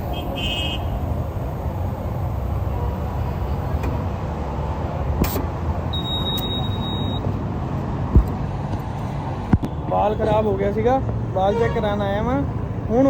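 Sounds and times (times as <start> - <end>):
road vehicle rumble: 0.0 - 13.0
high-pitched electronic beep: 5.9 - 7.2.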